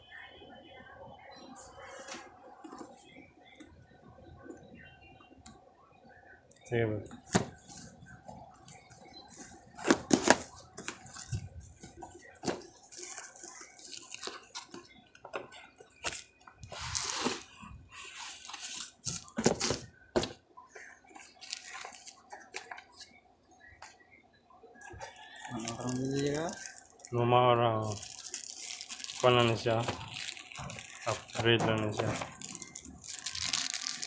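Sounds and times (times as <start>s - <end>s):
packaging rustling and clicking: 7.1s - 23.1s, 24.8s - 27.1s, 27.8s - 34.0s.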